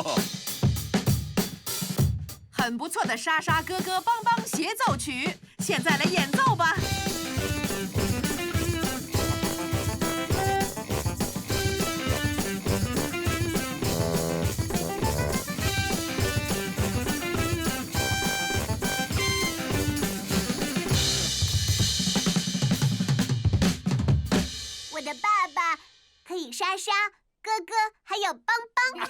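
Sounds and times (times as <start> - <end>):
drum kit beat: 0.0 - 25.8
cartoon band playing lively tune: 5.9 - 22.4.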